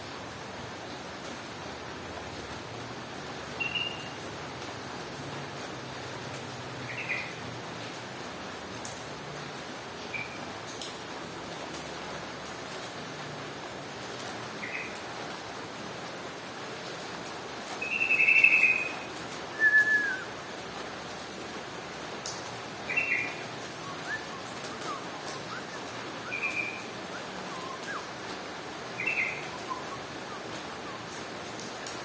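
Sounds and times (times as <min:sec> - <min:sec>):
steady background hiss: 0:00.0 - 0:32.0
bulbul whistled chirps: 0:19.6 - 0:20.3, 0:23.0 - 0:28.1, 0:29.0 - 0:31.1.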